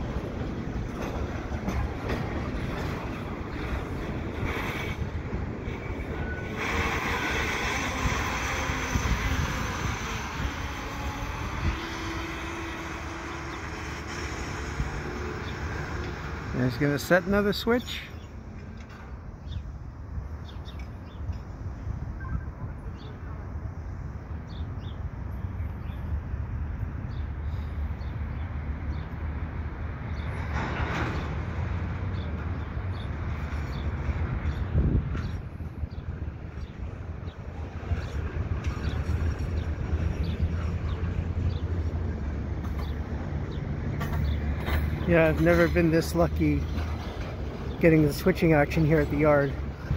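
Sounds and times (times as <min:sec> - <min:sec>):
wind noise on microphone: 0:00.0 - 0:16.5, 0:32.8 - 0:43.3
diesel locomotive engine rumble: 0:00.0 - 0:49.9.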